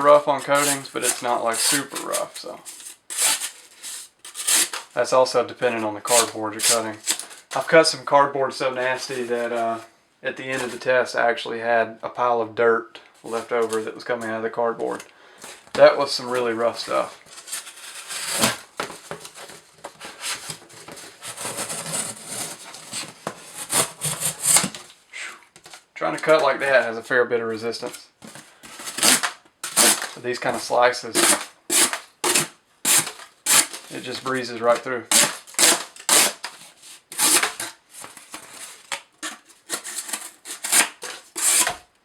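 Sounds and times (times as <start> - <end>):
knife slicing cardboard: 0.4 - 4.8, 17.0 - 19.3, 20.0 - 24.8, 28.8 - 30.2, 31.2 - 33.9, 35.1 - 36.5, 37.1 - 37.8, 39.2 - 41.8.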